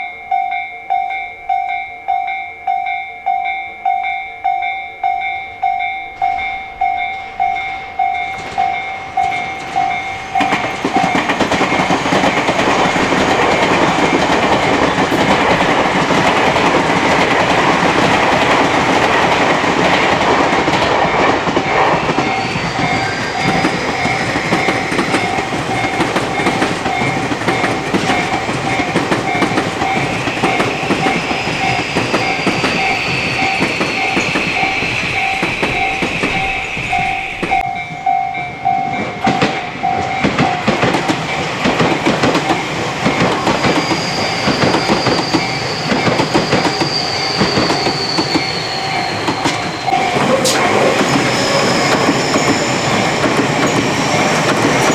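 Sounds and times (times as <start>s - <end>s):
railway crossing bell clanging: 0.0s - 54.9s
train wheels clattering: 4.0s - 54.9s.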